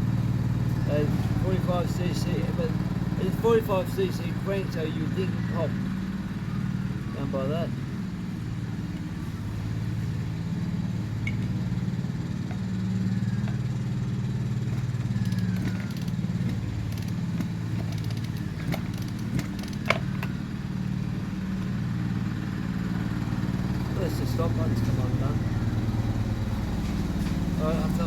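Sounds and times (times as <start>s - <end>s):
low engine drone: 0.0s - 28.0s
sharp clicks: 14.7s - 20.4s.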